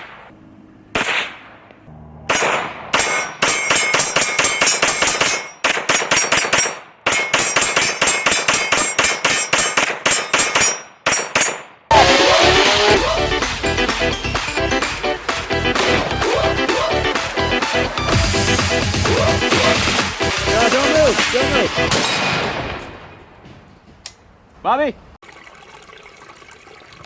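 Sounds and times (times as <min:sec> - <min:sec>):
pistol shots: 0:00.9 - 0:11.8, 0:21.9 - 0:23.2
metallic clang of steel targets: 0:02.3 - 0:11.7
music: 0:11.9 - 0:22.0.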